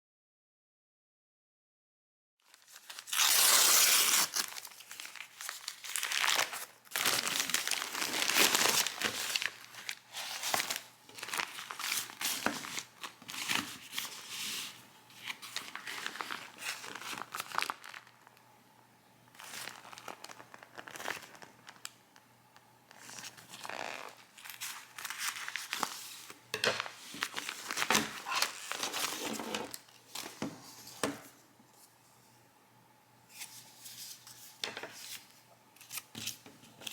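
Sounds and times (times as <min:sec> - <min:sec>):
packaging crinkling and tearing: 0:02.4 - 0:18.4, 0:19.3 - 0:22.0, 0:22.9 - 0:30.4.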